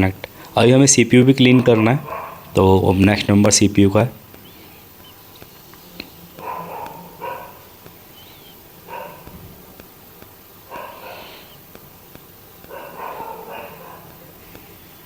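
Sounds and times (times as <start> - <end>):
dog barking: 1.6 - 5.3, 6.0 - 9.7, 10.6 - 11.8, 12.5 - 15.0.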